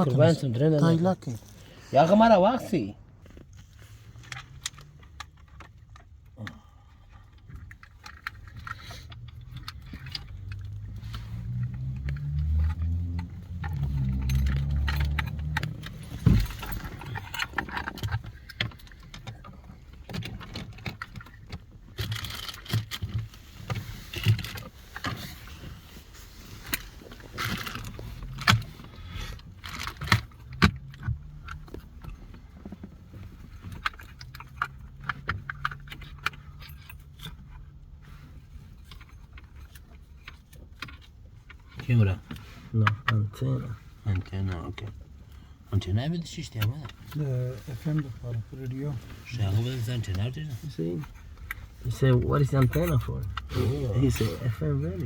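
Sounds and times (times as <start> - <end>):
small hard parts clicking and rattling: 0.0 - 55.0.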